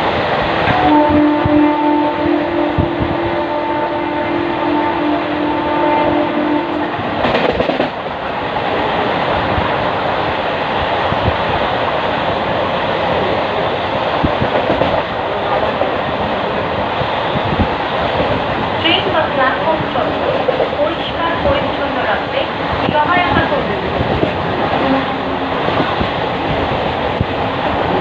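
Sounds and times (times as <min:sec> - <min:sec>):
train wheels rumbling on rails: 0:00.0 - 0:28.0
train horn: 0:00.6 - 0:07.1, 0:24.8 - 0:25.6.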